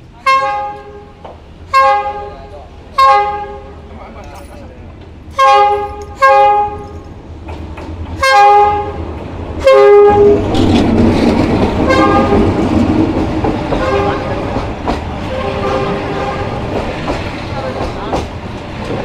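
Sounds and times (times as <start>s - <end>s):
train rumbling past: 0.0s - 19.0s
train horn blasts: 0.2s - 3.8s, 5.3s - 7.0s, 8.2s - 9.0s, 9.6s - 10.5s, 11.8s - 12.6s, 13.8s - 14.5s, 15.3s - 16.7s.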